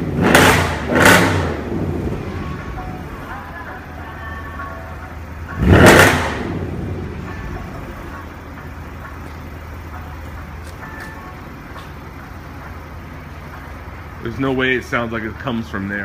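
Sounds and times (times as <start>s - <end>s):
loud exhaust blast: 0.0s - 3.2s, 5.2s - 9.0s
car exhaust rumbling at idle: 0.0s - 16.0s.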